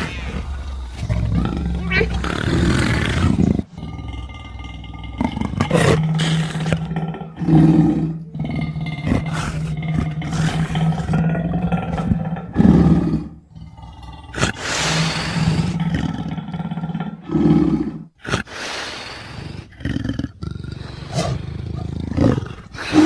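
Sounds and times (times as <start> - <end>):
big cat roaring: 0.0 - 18.1, 19.8 - 23.0.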